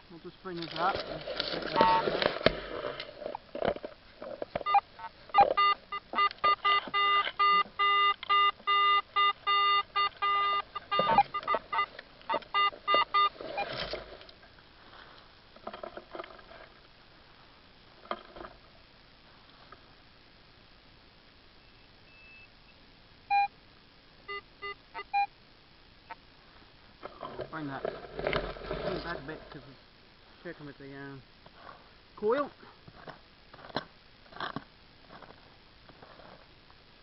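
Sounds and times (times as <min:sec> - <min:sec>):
scraping in dirt: 0:00.6 - 0:04.5, 0:27.0 - 0:29.5
metal detector probe beeping: 0:01.7 - 0:02.0, 0:04.6 - 0:13.8, 0:23.3 - 0:23.5, 0:24.3 - 0:25.3.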